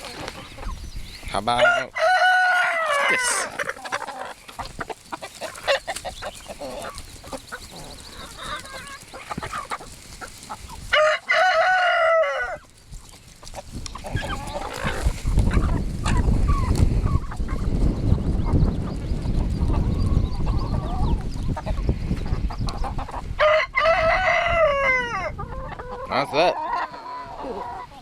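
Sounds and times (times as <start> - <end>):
chickens clucking: 0.0 - 28.0
rooster crowing: 1.6 - 3.5, 10.9 - 12.6, 23.4 - 25.3.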